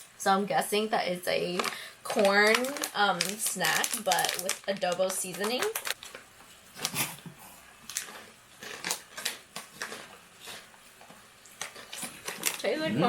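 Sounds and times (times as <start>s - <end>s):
crunchy corn being chewed: 5.3s - 12.7s.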